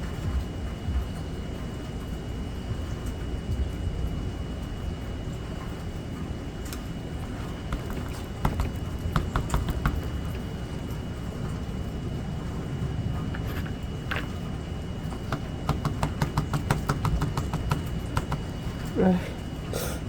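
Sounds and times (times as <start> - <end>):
sharp taps and drips: 7.6 - 10.6, 15.1 - 18.9.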